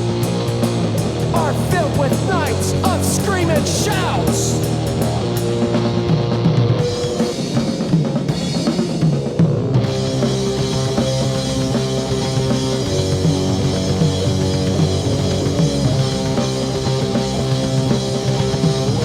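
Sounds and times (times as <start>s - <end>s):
rock band playing instrumental: 0.0s - 19.0s.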